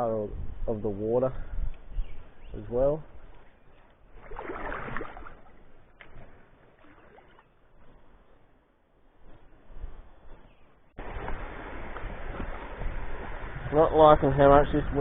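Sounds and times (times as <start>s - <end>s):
water sloshing as someone wades: 3.4s - 8.6s.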